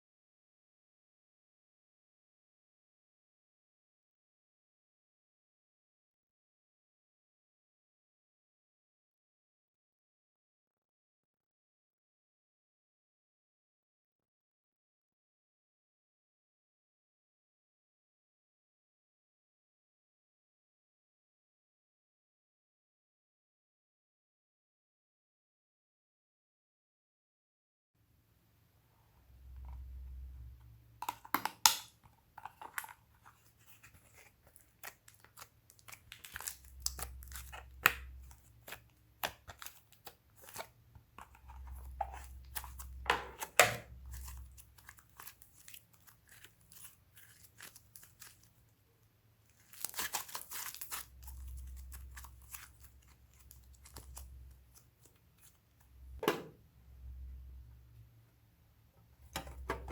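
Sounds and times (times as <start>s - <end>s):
slime crackling and popping: 49.6s - 54.2s.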